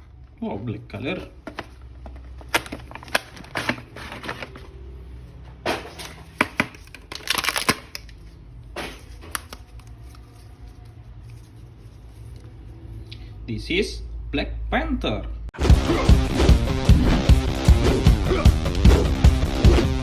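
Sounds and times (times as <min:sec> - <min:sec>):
packaging rustling: 0:01.1 - 0:04.8, 0:05.9 - 0:12.7.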